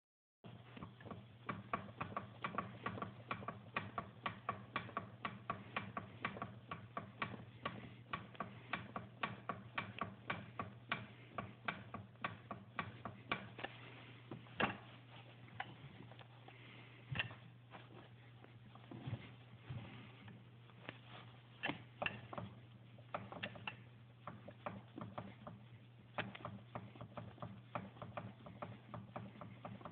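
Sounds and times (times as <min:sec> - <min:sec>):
engine ticking knock: 0:26.4 - 0:29.9.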